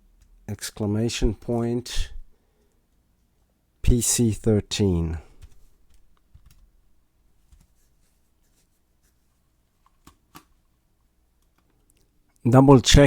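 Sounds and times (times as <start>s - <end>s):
computer keyboard clicks: 5.4s - 6.7s.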